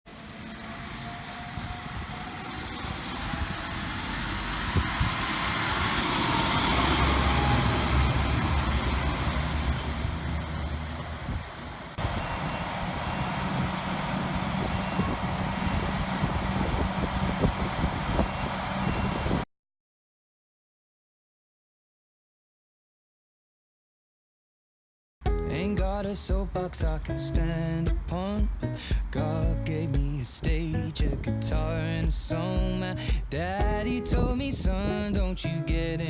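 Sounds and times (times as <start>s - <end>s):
diesel engine of harvest machinery: 0.1s - 19.4s.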